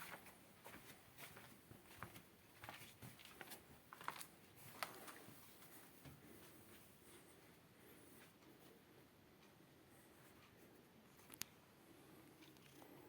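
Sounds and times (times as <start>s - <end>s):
soft rustles: 0.0s - 9.1s
quiet steady hiss: 0.0s - 13.0s.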